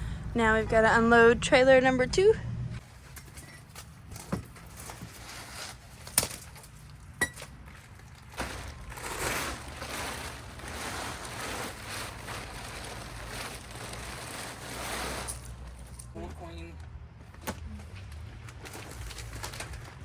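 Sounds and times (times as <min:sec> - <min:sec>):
blankets rustling: 0:08.3 - 0:15.9.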